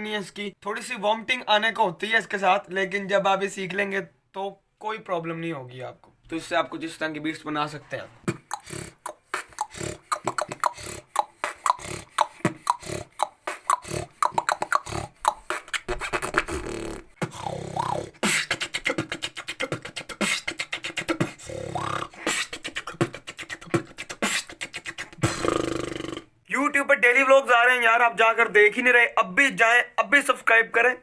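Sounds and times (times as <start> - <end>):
rasping inhaled snore bass: 8.2 - 15.4, 16.0 - 20.4, 21.0 - 26.3
beatboxing: 8.3 - 26.3.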